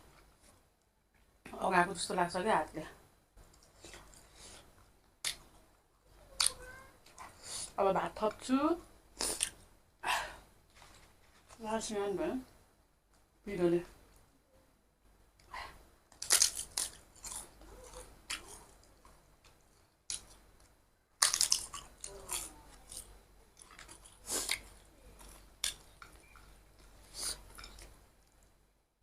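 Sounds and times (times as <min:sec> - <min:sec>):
chewing and lip-smacking: 0:16.1 - 0:28.5.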